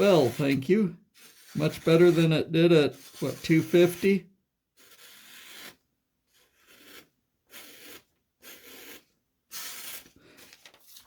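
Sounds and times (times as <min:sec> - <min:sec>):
knife slicing through paper: 0:03.0 - 0:04.1, 0:07.6 - 0:11.0.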